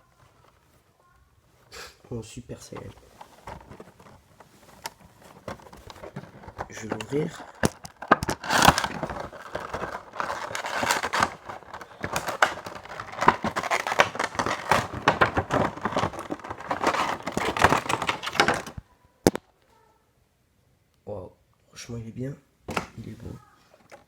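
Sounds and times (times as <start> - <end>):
plastic packaging crinkling: 2.6 - 19.4.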